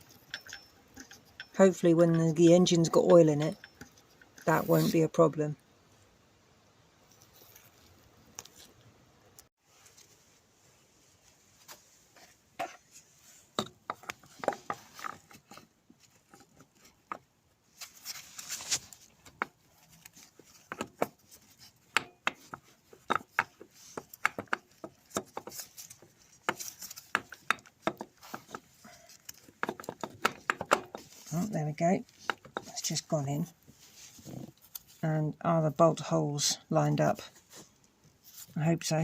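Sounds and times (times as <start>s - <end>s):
metal part knocking and scraping: 0.0s - 5.0s, 13.5s - 17.3s, 18.7s - 33.1s.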